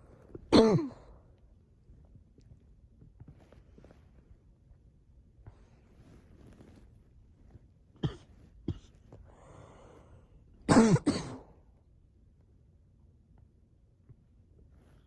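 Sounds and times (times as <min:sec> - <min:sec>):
person coughing: 0:00.5 - 0:01.1, 0:08.0 - 0:09.0, 0:10.7 - 0:11.5.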